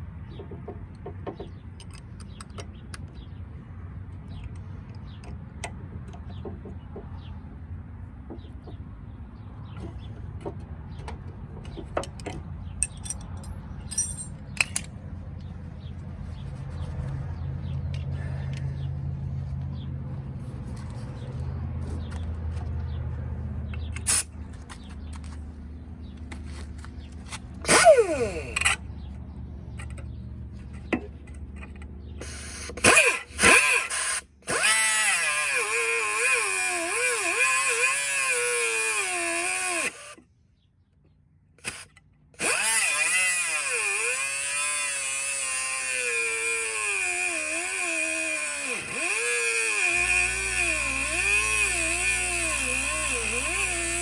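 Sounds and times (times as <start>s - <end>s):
electric power tool on steel: 27.6s - 28.8s, 32.2s - 40.2s, 41.6s - 54.0s.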